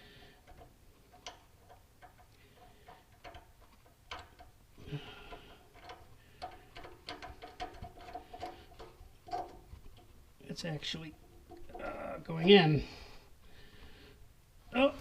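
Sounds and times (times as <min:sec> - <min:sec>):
metallic clicks of hand wrench: 0:00.4 - 0:09.6.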